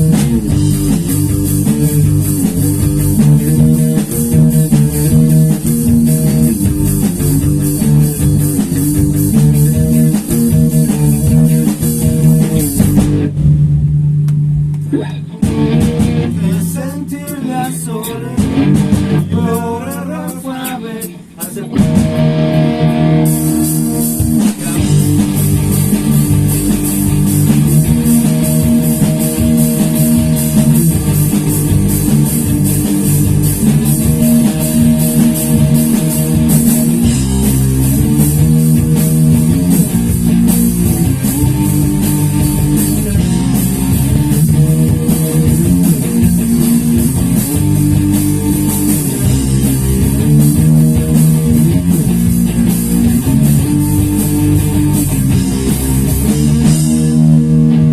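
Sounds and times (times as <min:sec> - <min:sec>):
bass guitar: 0:00.0 - 0:57.9
drum kit with fast cymbal beat: 0:00.0 - 0:57.9
guitar riffs: 0:00.0 - 0:57.9.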